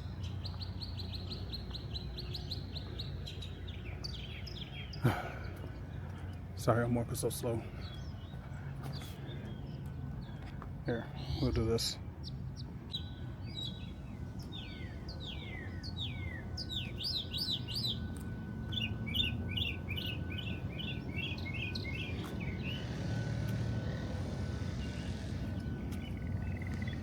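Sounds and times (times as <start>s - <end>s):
songbirds singing: 0.0s - 27.0s
steady low background rumble: 0.0s - 27.0s.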